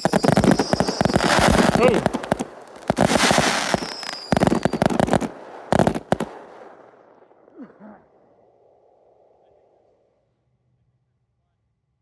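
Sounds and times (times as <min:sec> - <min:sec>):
fireworks crackling pops: 0:00.0 - 0:06.9.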